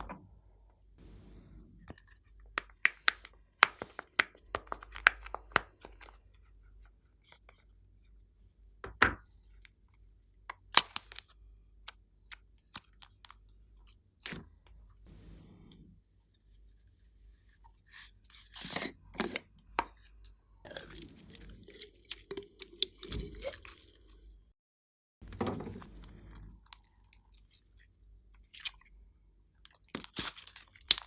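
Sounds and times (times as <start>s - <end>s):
slime squishing and crackling: 20.7s - 24.2s, 29.6s - 31.0s
slime clicking and popping: 29.7s - 31.0s.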